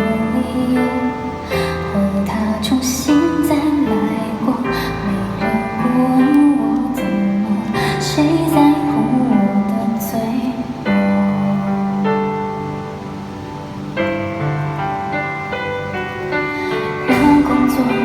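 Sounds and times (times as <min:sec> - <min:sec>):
woman singing pop ballad: 0:00.0 - 0:12.4, 0:17.0 - 0:18.0
guitar: 0:00.0 - 0:18.0
piano: 0:00.0 - 0:18.0.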